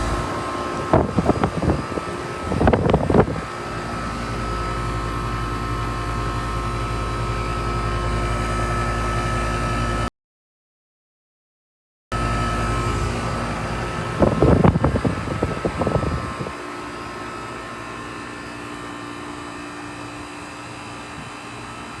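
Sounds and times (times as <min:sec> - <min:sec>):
rough irregular rumbling: 0:00.0 - 0:03.6
air conditioner fan and compressor hum: 0:00.0 - 0:10.1, 0:12.2 - 0:22.0.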